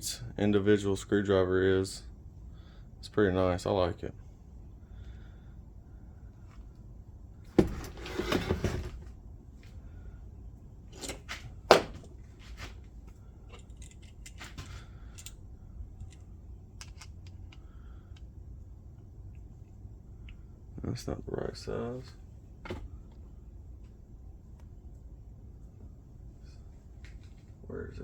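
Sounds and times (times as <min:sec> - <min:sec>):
screwdrivers clattering: 0:13.5 - 0:15.4, 0:16.0 - 0:17.6.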